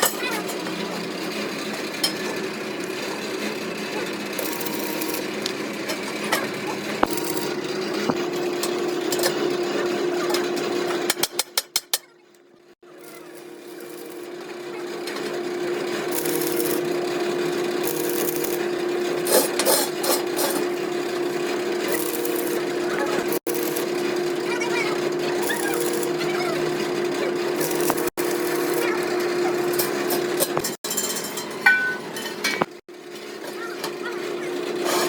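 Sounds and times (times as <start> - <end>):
workshop machine humming: 0.0 - 35.0.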